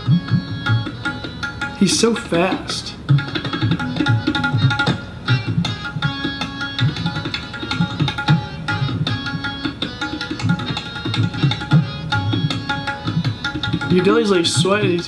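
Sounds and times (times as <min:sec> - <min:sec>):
fast tabla treble strokes: 0:10.1 - 0:15.0.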